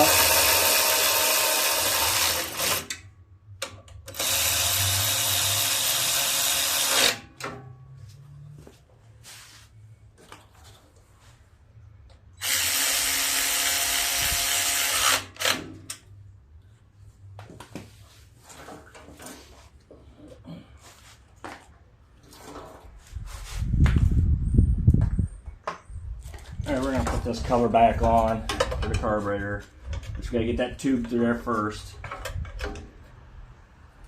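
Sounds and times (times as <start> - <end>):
power drill driving bolts: 0.0 - 3.0, 3.6 - 7.5, 12.4 - 16.0.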